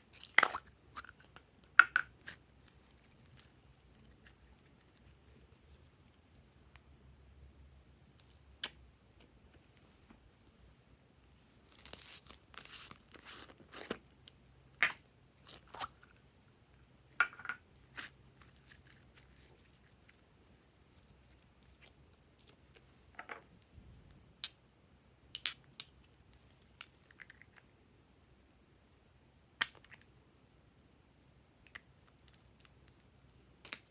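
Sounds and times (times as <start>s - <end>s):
slime crackling and popping: 11.6s - 14.1s.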